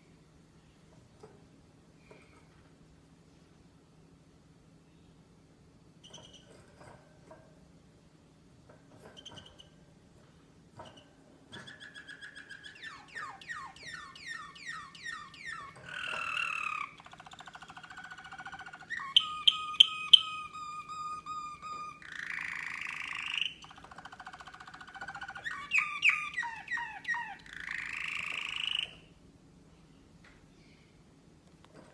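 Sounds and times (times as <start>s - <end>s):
canary singing trills: 6.0s - 6.6s, 10.8s - 29.2s.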